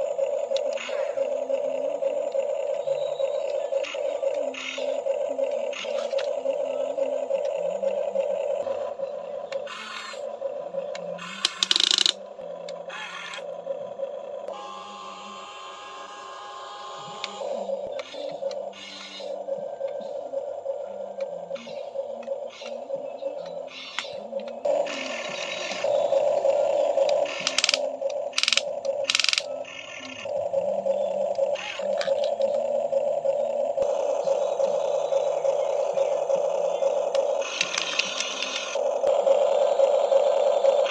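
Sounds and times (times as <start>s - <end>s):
toy excavator motors whining: 0.0s - 40.9s
gear rattle and grinding: 23.7s - 40.9s.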